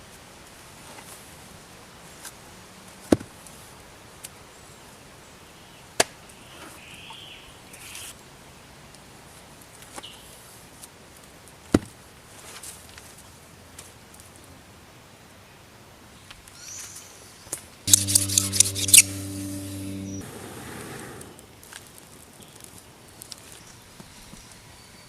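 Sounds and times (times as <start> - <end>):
sharp loud strikes: 17.9 - 20.2.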